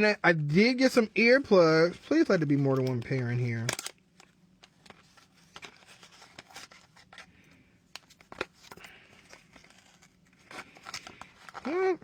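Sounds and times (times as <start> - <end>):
package rustling and clicking: 2.4 - 7.3.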